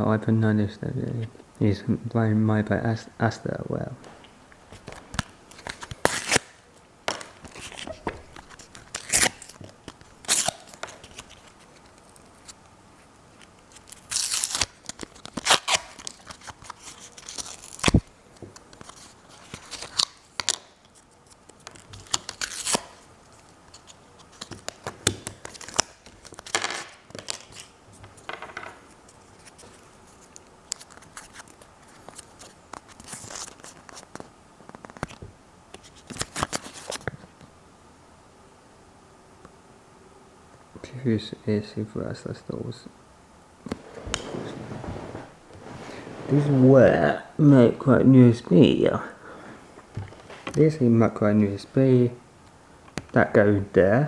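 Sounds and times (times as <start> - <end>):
packaging tearing and crinkling: 5.1 - 12.6, 13.4 - 28.3, 29.1 - 35.2, 35.8 - 37.0.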